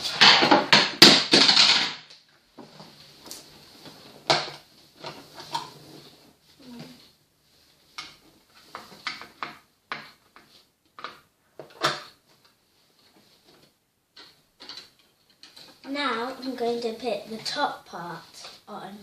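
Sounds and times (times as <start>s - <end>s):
plastic toys clattering: 0.0s - 3.4s, 8.0s - 12.5s, 13.6s - 16.3s.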